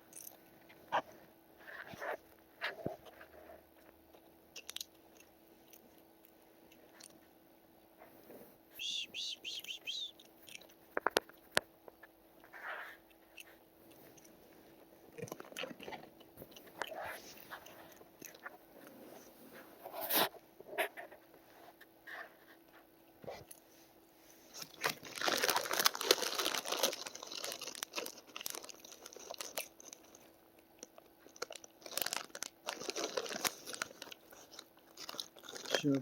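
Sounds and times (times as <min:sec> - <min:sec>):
potato chips crunching: 0:24.6 - 0:30.3, 0:30.9 - 0:36.0.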